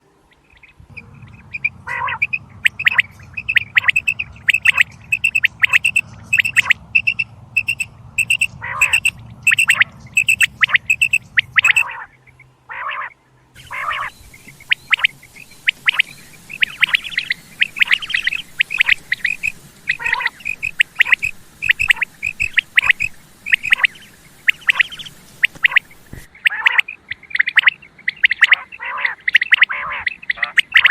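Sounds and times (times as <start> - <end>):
light hiss: 0.0 - 11.8, 13.6 - 26.4
low hum: 0.0 - 26.3
quail calling: 0.3 - 30.9.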